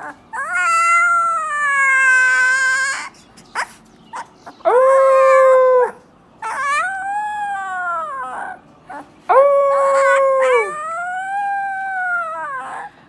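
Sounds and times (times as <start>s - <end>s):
puppy squeak: 0.0s - 9.1s
puppy howling: 0.0s - 13.0s.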